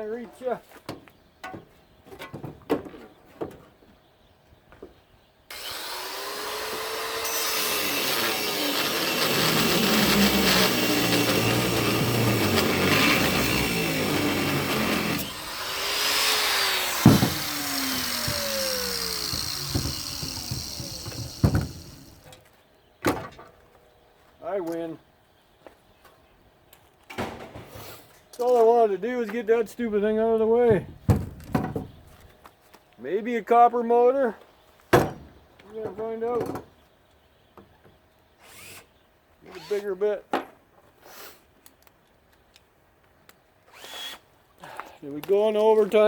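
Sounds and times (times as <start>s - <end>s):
angle grinder cutting metal: 5.5s - 22.3s
scattered knocks: 16.2s - 22.3s.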